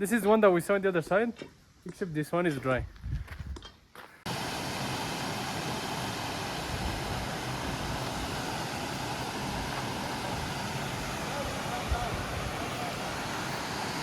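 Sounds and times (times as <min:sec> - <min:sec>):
waterfall rushing: 0:04.3 - 0:14.0.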